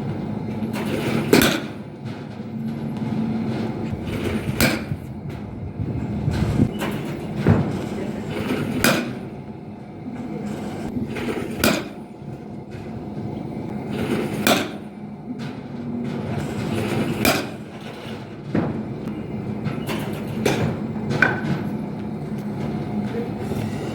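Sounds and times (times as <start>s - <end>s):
wind noise: 2.1s - 8.9s
baseball bat cracking balls: 11.2s - 13.0s.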